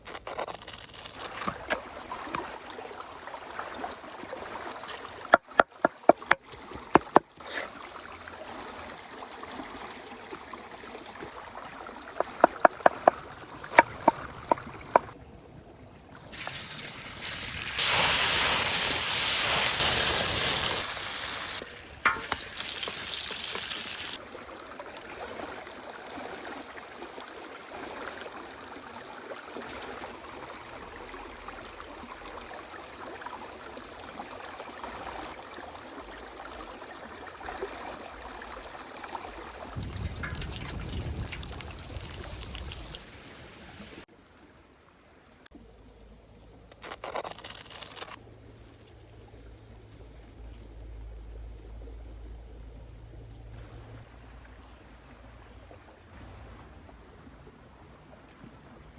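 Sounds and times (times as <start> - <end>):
stream running: 0.0 - 58.9
loud hiss: 16.4 - 24.2.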